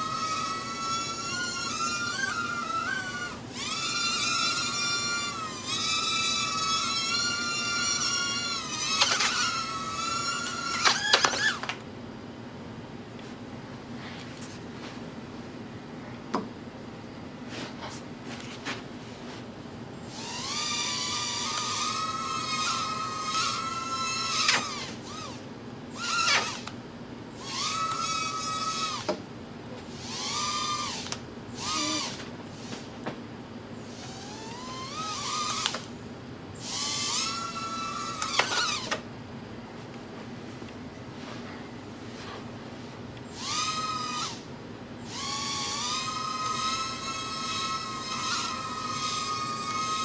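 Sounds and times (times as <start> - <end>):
small drone motors whining: 0.0 - 11.7, 20.1 - 26.7, 27.3 - 29.1, 30.0 - 32.9, 33.8 - 35.9, 36.6 - 39.0, 43.2 - 50.0.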